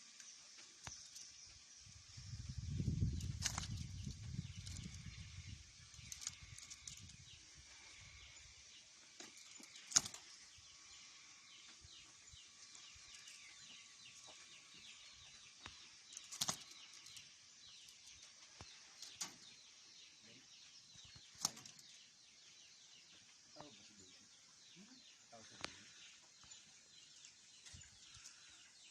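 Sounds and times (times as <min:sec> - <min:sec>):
patter of small high sounds: 0:00.0 - 0:19.6
bird wings fluttering: 0:02.9 - 0:05.2, 0:09.5 - 0:10.3, 0:16.1 - 0:17.2.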